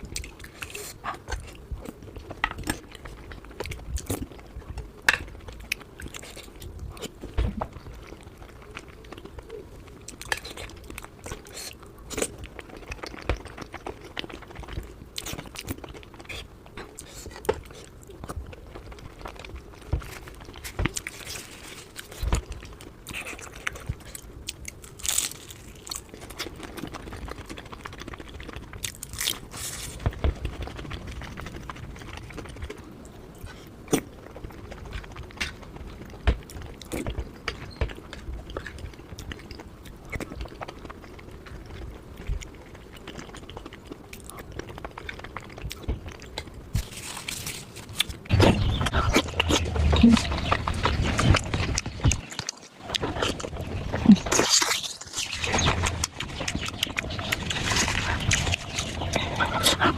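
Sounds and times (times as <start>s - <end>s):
person chewing dumplings: 0.0s - 59.9s.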